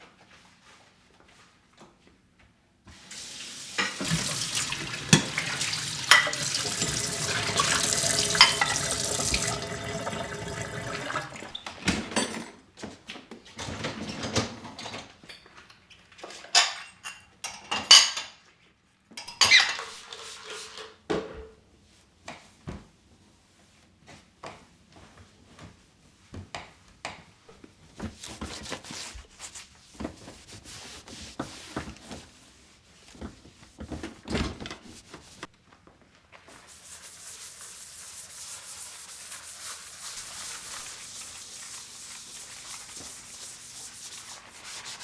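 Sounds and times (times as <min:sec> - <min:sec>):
tap water running into sink: 0:02.9 - 0:12.2
dishes clinking and knocking: 0:03.8 - 0:12.6.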